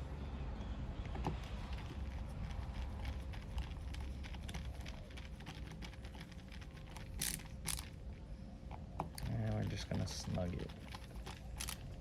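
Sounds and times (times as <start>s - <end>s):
screwdriver clicking on metal: 9.0s - 11.9s.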